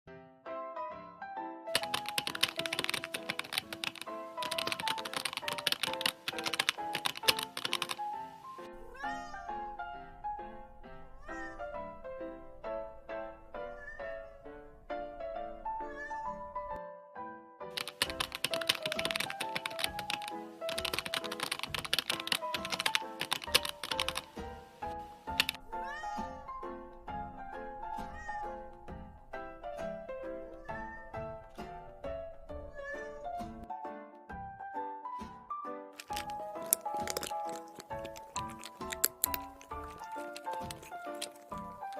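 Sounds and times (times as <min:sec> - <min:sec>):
light melodic background music: 0:00.2 - 0:41.9
typewriter keys clattering: 0:01.8 - 0:08.2, 0:17.8 - 0:24.5, 0:25.3 - 0:25.6, 0:36.0 - 0:41.9.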